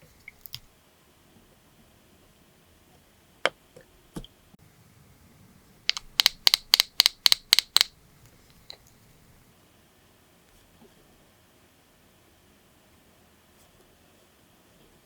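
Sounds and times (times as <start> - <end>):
sharp clicks of small objects: 5.9 - 7.9.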